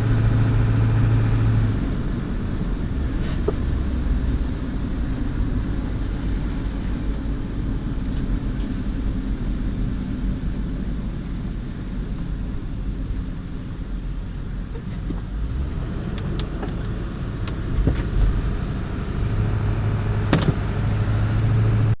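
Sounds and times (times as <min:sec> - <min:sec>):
vehicle engine and road rumble: 0:00.0 - 0:22.0
sharp clicks or knocks: 0:20.3 - 0:20.6.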